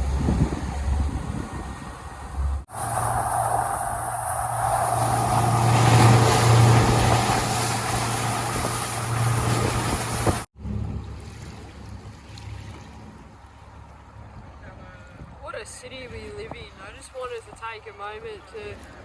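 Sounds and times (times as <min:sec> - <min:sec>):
low hum: 0:00.0 - 0:12.0
wind and water rushing: 0:00.0 - 0:17.8
outboard motor running: 0:04.1 - 0:13.5.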